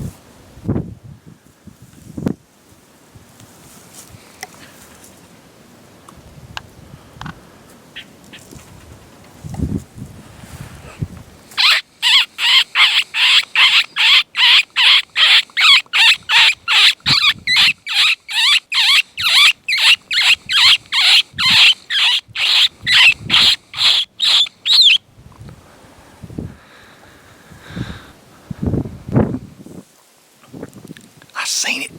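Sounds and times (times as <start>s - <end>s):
predator call wailing squalls: 11.6s - 25.0s.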